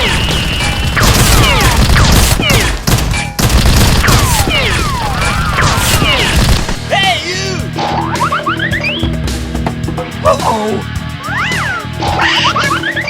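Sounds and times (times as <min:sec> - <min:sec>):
rapid gunfire: 0:00.0 - 0:06.9
falling whistling tones: 0:08.6 - 0:09.2.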